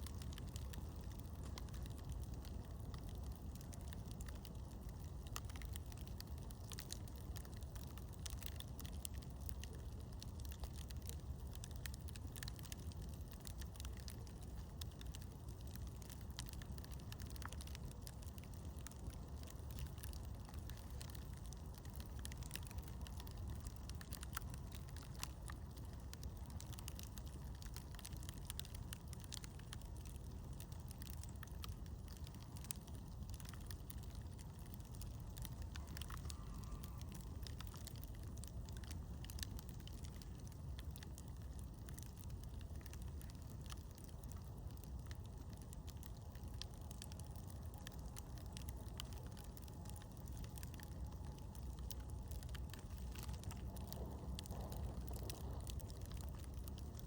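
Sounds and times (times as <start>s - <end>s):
campfire crackling: 0.0s - 57.0s
low rumble: 51.4s - 57.0s.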